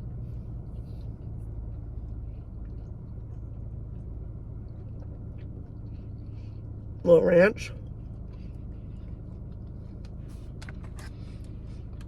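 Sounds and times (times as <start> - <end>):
chewing clicks: 4.0 - 6.2.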